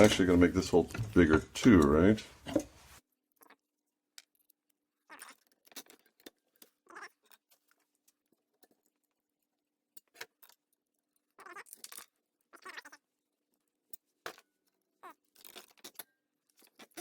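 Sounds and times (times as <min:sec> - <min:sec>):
metal parts and tools clicking: 0:04.2 - 0:12.2, 0:13.6 - 0:17.0.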